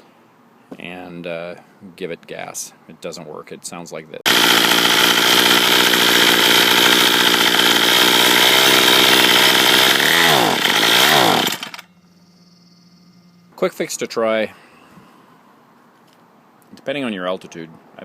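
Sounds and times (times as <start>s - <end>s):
string trimmer engine running: 4.3s - 11.9s.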